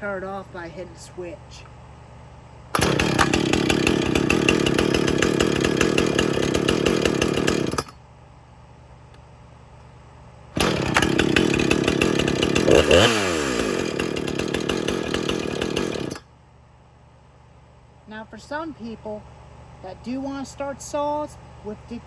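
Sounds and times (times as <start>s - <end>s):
chainsaw running: 2.8s - 8.0s, 10.6s - 16.3s.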